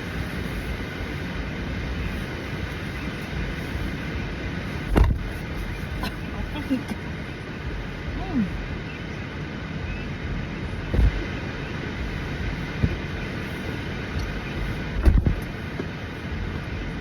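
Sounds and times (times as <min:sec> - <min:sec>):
car engine rumble in cabin: 0:00.0 - 0:17.0
dull thumps: 0:01.8 - 0:06.3, 0:10.9 - 0:16.6.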